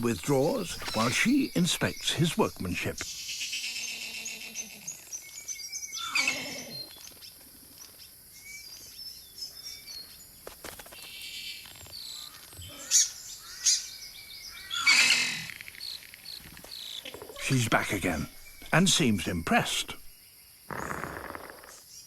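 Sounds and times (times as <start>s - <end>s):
harsh falling bird call: 0.0s - 3.0s
birds chirping and calling: 0.0s - 3.1s, 16.7s - 20.1s
loud sharp bird calls: 0.0s - 5.0s, 12.1s - 20.1s, 20.7s - 22.0s.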